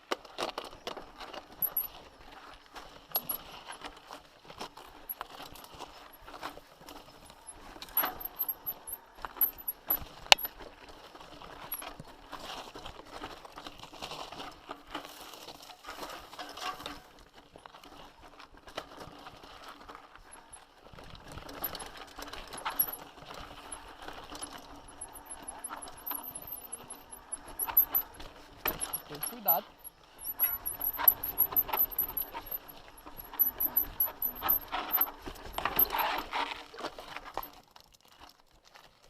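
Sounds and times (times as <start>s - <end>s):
mountain bike rattling on rocky trail: 0.0s - 38.5s
metallic jangles and knocks: 1.6s - 1.9s, 3.1s - 3.7s, 7.0s - 10.5s, 21.6s - 23.0s, 23.6s - 36.2s, 37.3s - 37.5s.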